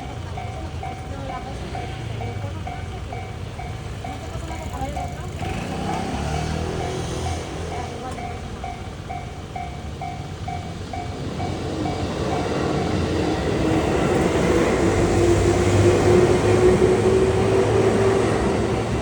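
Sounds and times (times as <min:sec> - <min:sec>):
level crossing bell dinging: 0:00.0 - 0:14.3
train running through crossing: 0:00.0 - 0:19.0.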